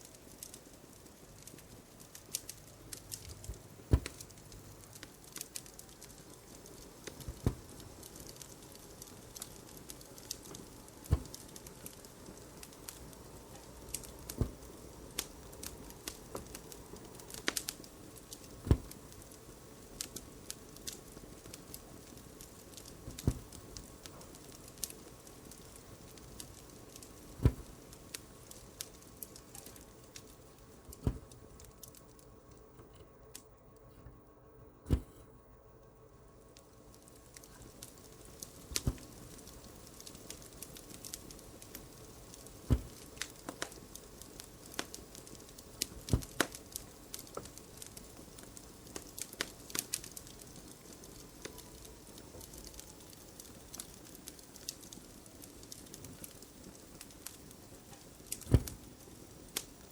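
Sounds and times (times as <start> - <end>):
wood fire crackling: 0.0 - 34.2, 34.9 - 35.2, 35.8 - 59.9
needle tapping through canvas: 2.3 - 4.6, 7.0 - 8.4, 10.2 - 11.6, 13.9 - 19.4, 22.8 - 28.2, 30.8 - 31.7, 37.4 - 43.8, 45.8 - 47.6, 58.2 - 58.9.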